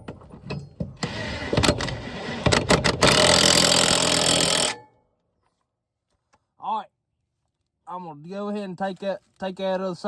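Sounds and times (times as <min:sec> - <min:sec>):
power tool running: 0:01.0 - 0:04.8.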